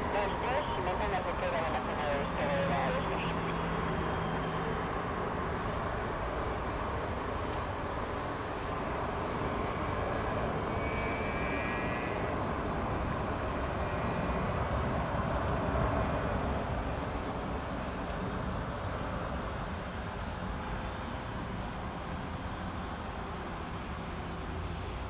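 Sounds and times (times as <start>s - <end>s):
jet engines running: 0.0s - 17.0s.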